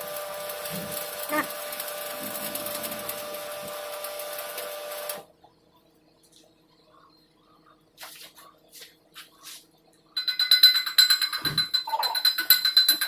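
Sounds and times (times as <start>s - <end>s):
welding arc crackling: 0.0s - 5.2s
faint scratches: 8.0s - 9.7s.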